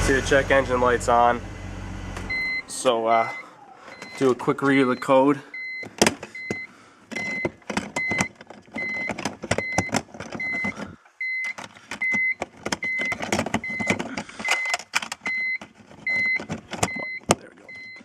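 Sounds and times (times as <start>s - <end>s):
electronic warning beep: 2.3s - 18.0s
irregular clicks and knocks: 5.7s - 18.0s.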